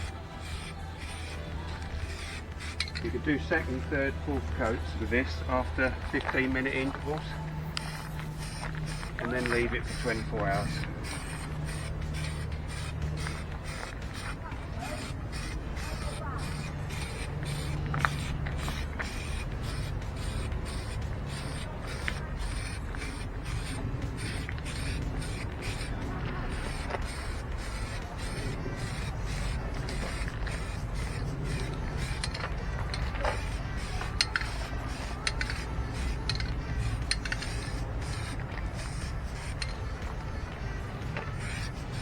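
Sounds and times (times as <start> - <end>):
aerosol can spraying: 0.0 - 42.0
metallic clinks of aerosol can: 0.5 - 3.9, 26.5 - 40.0.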